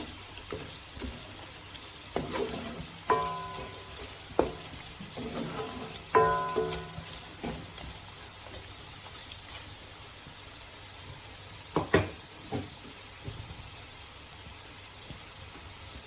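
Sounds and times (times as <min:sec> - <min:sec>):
food sizzling in a pan: 0:00.0 - 0:16.0
utensil knocking against pan: 0:02.2 - 0:07.7.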